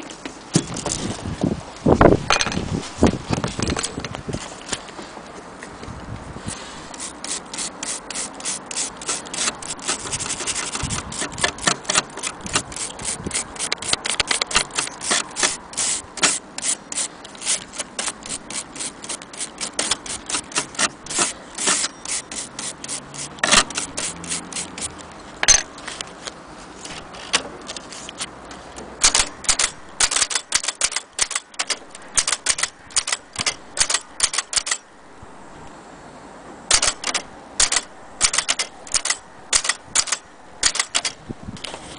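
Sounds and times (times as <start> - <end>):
typewriter key strikes: 13.7 - 15.6, 29.0 - 34.8, 36.7 - 41.2.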